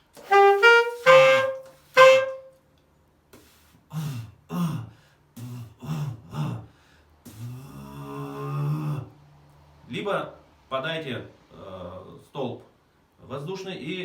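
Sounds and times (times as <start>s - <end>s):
saxophone notes: 0.1s - 2.6s
saxophone growl with low buzz: 0.2s - 2.4s, 7.3s - 9.2s
rough throat sounds: 3.9s - 6.7s, 7.3s - 9.2s.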